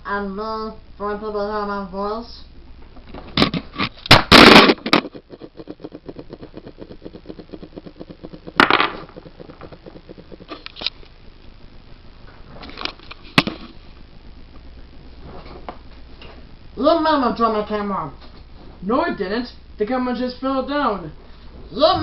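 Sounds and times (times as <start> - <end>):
fast ticking rattle: 4.3 - 10.9.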